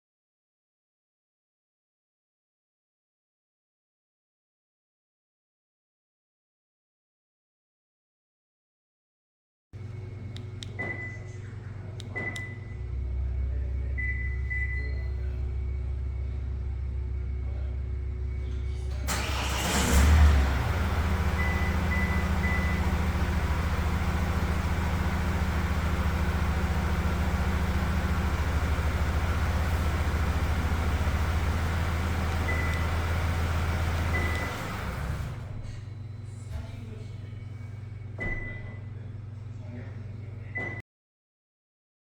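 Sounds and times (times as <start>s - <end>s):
car engine starting and idling: 18.3s - 36.4s.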